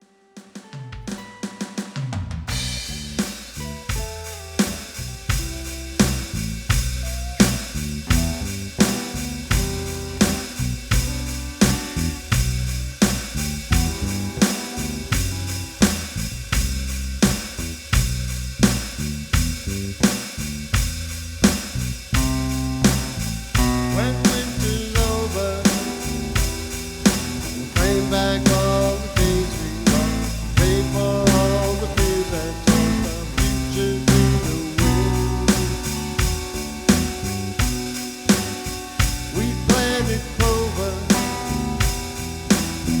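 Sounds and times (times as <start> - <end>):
drum kit beat: 0.4 - 43.0
bass guitar: 2.2 - 43.0
guitars playing: 22.2 - 43.0.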